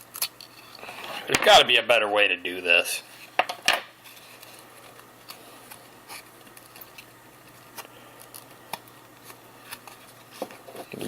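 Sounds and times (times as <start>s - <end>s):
cards rustling and clicking: 4.0s - 11.0s.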